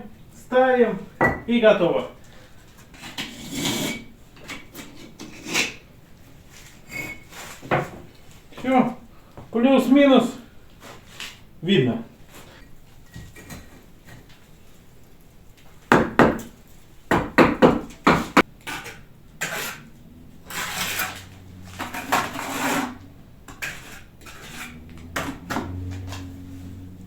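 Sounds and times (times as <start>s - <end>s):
trowel scraping mortar: 2.9s - 5.8s, 18.1s - 26.4s.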